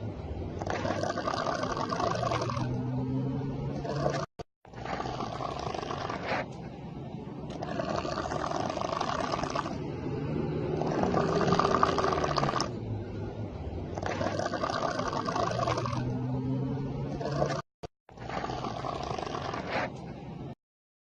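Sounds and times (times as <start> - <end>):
person snoring loudly: 0.6 - 3.1, 3.8 - 6.5, 7.5 - 12.7, 14.0 - 16.2, 17.2 - 17.6, 18.2 - 19.9.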